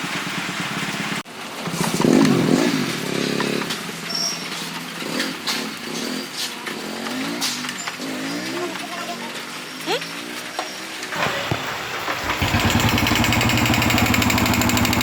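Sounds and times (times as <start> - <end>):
motorcycle engine running: 0.0 - 4.1, 11.2 - 15.0.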